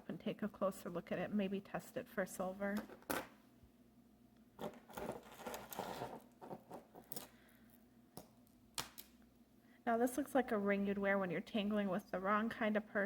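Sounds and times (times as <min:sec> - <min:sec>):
jewelry rustling and clicking: 0:04.6 - 0:09.2.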